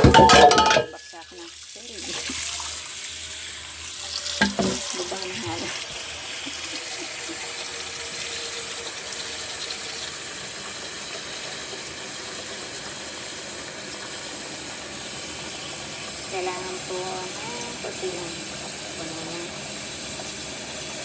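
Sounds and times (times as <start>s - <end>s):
fish sizzling in hot oil: 0.6s - 21.0s.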